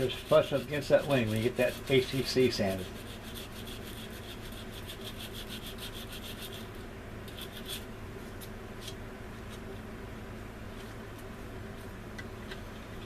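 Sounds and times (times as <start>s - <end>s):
hand sanding plastic: 0.0s - 9.0s.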